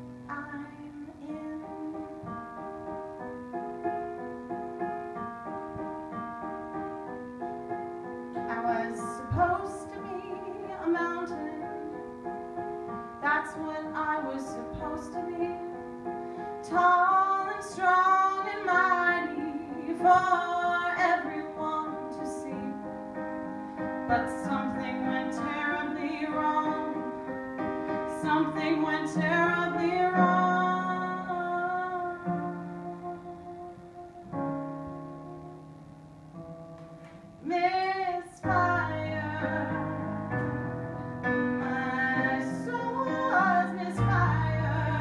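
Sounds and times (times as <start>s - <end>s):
keyboard chords: 0.0s - 37.5s
woman singing: 0.2s - 2.5s, 8.4s - 12.0s, 13.2s - 15.8s, 16.6s - 23.0s, 24.0s - 34.4s, 37.4s - 40.3s, 41.3s - 45.0s.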